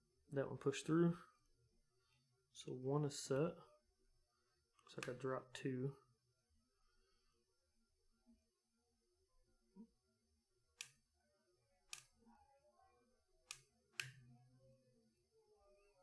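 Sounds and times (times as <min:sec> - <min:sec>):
lock pick clicking on pins: 0:11.9 - 0:12.2, 0:13.4 - 0:14.3.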